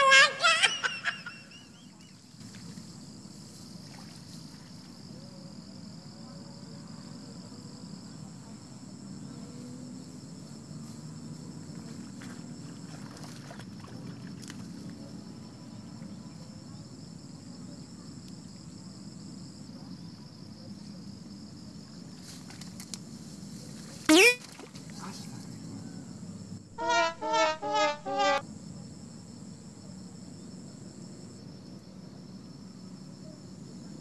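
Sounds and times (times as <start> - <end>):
high-pitched insect chorus: 0.0 - 34.0
loud rising pitch sweep: 26.8 - 28.4.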